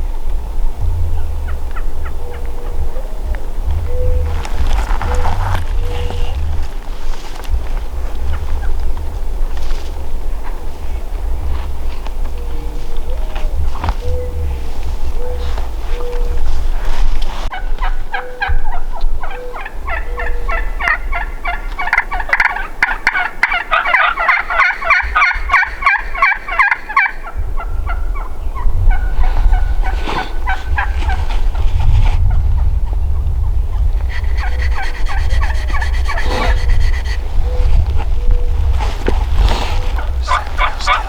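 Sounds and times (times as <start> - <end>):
low rumble: 0.0 - 17.5, 27.4 - 41.0
turkeys gobbling: 1.1 - 11.1, 12.0 - 16.9, 17.5 - 31.7, 32.3 - 41.0.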